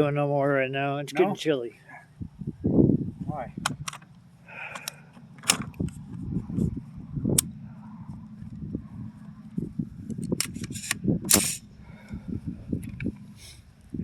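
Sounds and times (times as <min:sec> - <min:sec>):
microphone handling rumble: 0:02.2 - 0:04.1, 0:05.2 - 0:14.0
sharp clicks and knocks: 0:03.6 - 0:04.2, 0:04.8 - 0:06.0, 0:10.1 - 0:11.6.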